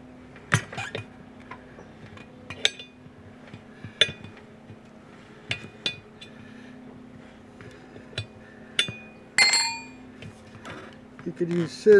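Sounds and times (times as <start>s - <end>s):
metal tools clinking: 8.8s - 10.0s.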